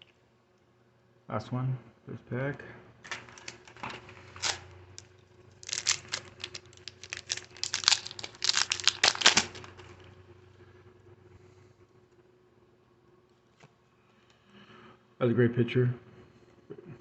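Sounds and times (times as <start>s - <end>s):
foil wrapper tearing and crinkling: 3.0s - 9.9s.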